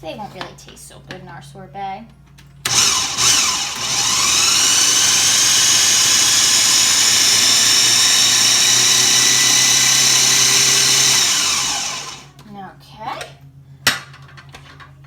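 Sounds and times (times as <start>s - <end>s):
food processor motor whine: 2.7s - 12.4s.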